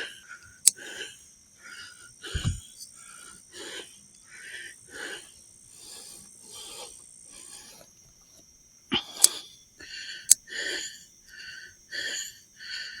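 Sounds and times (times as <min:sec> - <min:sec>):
heavy breathing: 0:00.8 - 0:07.9.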